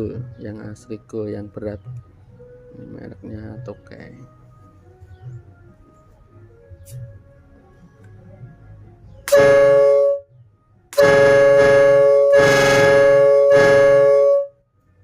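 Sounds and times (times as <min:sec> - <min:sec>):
air horn blasts: 0:09.3 - 0:10.3, 0:10.9 - 0:14.6.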